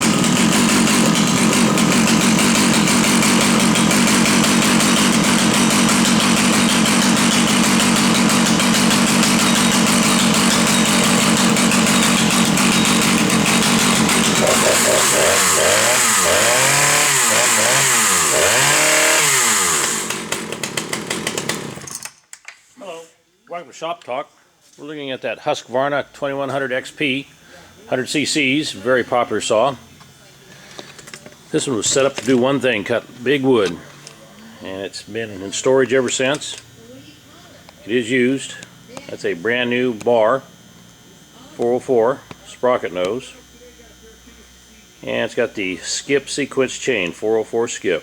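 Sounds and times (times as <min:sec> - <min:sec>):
chainsaw running and revving: 0:00.0 - 0:22.1, 0:30.6 - 0:36.9, 0:37.8 - 0:43.4.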